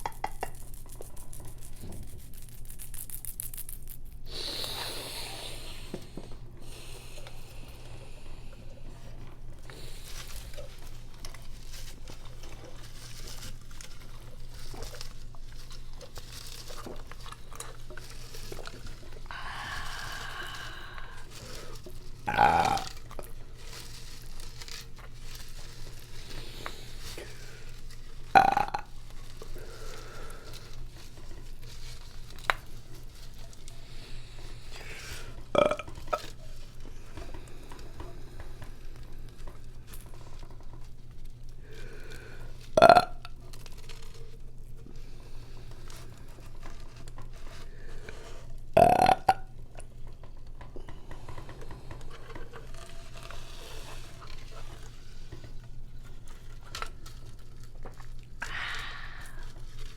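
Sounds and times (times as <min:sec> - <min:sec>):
woman burping: 0:22.3 - 0:22.9, 0:28.4 - 0:28.9, 0:35.6 - 0:35.9, 0:42.8 - 0:43.2, 0:48.8 - 0:49.4.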